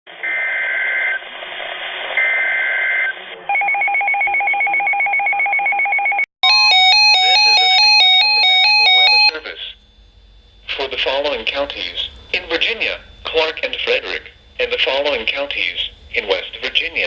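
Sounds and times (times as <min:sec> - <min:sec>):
radio hiss: 0:00.1 - 0:02.5, 0:09.3 - 0:17.0
stepping electronic tone melody: 0:06.4 - 0:09.4
pulsing two-tone beeping: 0:06.4 - 0:09.7.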